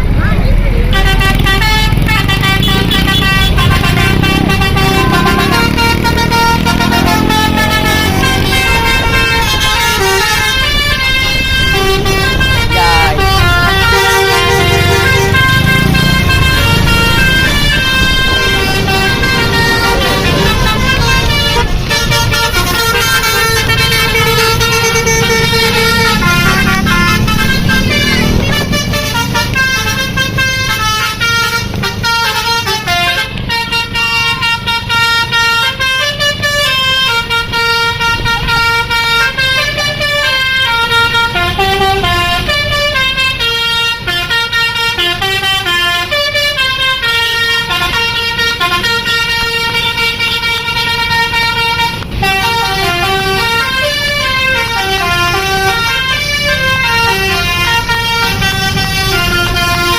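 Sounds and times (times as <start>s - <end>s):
bus engine running: 0.0s - 59.9s
bus musical horn melody: 0.8s - 59.9s.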